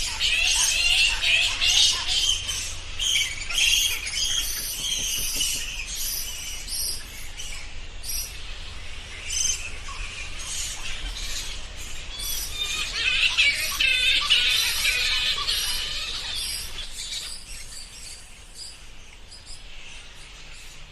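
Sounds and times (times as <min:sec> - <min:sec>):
bats squeaking: 0:00.0 - 0:08.4, 0:09.1 - 0:18.7.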